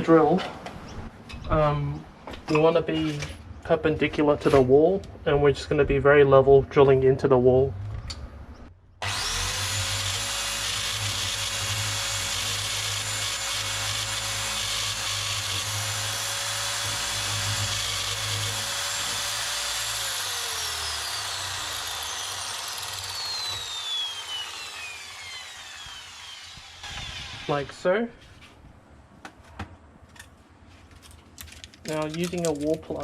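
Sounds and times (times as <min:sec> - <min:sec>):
power drill drilling into brick: 0:09.0 - 0:27.7.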